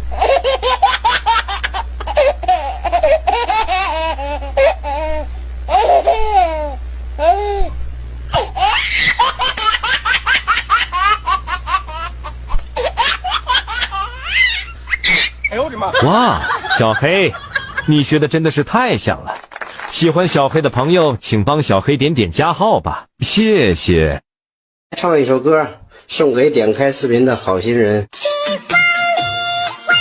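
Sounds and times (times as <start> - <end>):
parrot mimicking child laughter: 0.0 - 16.8.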